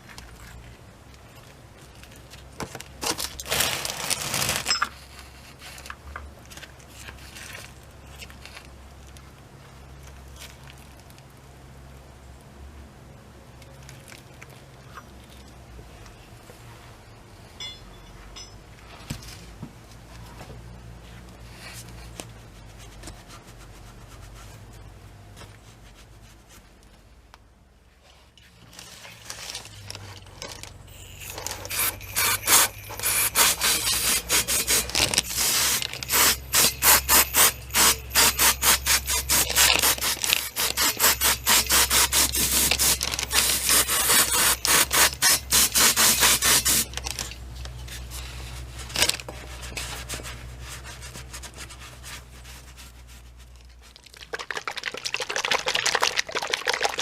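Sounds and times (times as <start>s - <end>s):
rapid scrubbing strokes: 31.3s - 47.0s, 47.9s - 56.0s.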